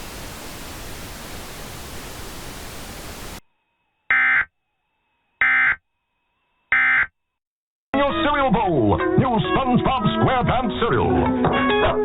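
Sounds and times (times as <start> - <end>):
radio static hiss: 0.0 - 3.4.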